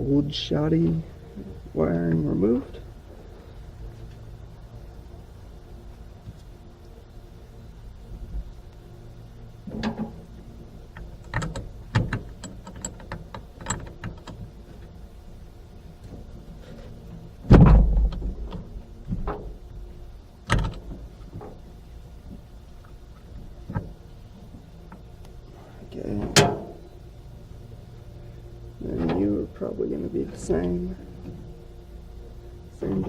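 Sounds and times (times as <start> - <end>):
loud thud: 17.5 - 18.3.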